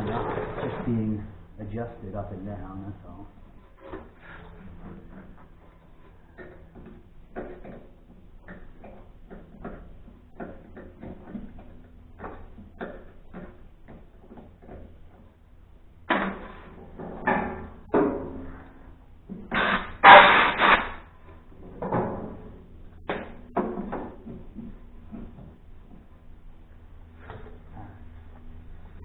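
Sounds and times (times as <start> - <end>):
metal knocks and clanks: 16.0 - 26.1.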